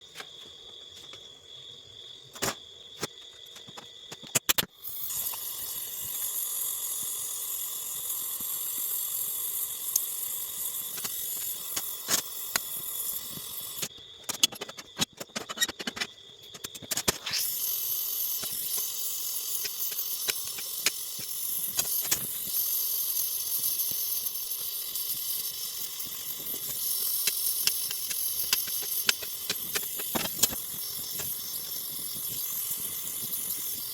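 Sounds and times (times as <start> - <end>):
gas torch flame hissing: 4.4 - 15.9, 16.6 - 33.9
sharp clicks and taps: 27.2 - 30.6.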